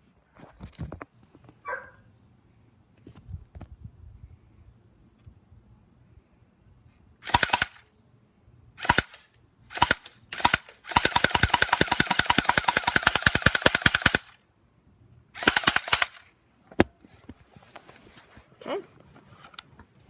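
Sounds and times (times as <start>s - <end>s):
airsoft pistol firing bursts: 7.2s - 7.8s, 8.8s - 14.4s, 15.4s - 16.2s.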